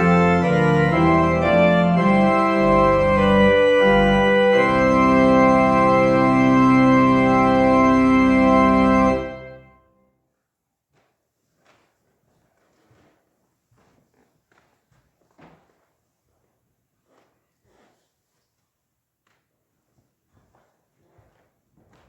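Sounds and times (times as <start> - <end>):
church organ playing chords: 0.0 - 9.8.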